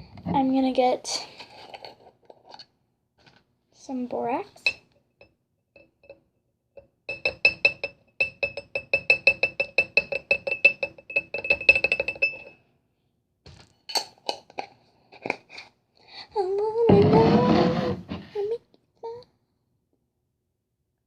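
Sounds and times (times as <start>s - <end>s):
utensil clinking on container: 7.1s - 12.6s.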